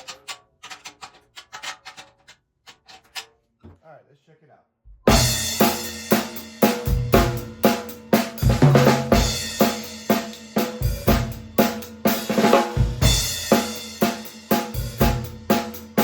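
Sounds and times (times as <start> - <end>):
bass drum hits: 4.9 - 5.6
cymbals: 5.1 - 16.0.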